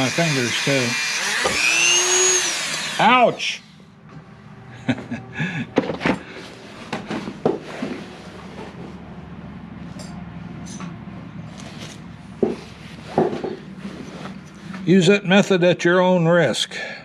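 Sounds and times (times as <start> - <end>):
knocks and clatters of tools: 5.8 - 6.3, 12.4 - 14.8.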